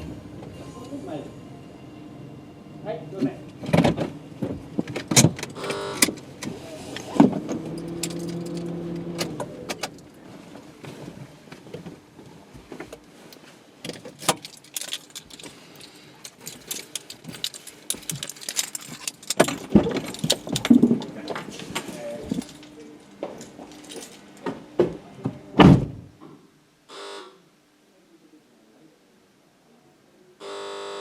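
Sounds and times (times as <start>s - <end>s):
steady low hum: 0.0s - 12.7s
small clicks and rattles: 7.5s - 10.2s, 13.3s - 24.5s.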